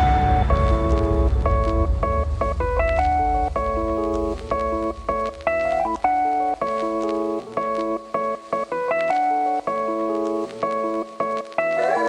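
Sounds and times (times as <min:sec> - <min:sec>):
low bass: 0:00.0 - 0:05.8
piano-like keyboard notes: 0:00.0 - 0:12.0.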